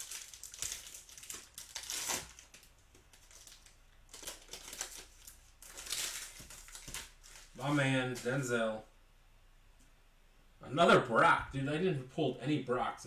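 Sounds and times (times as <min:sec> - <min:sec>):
card wrapper crinkling: 0:00.0 - 0:08.4.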